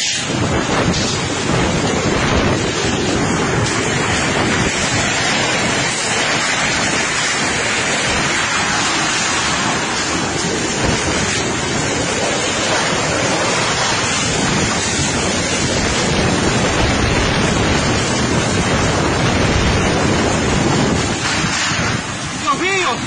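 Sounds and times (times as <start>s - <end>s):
wind and heavy rain on microphone: 0.0s - 23.0s.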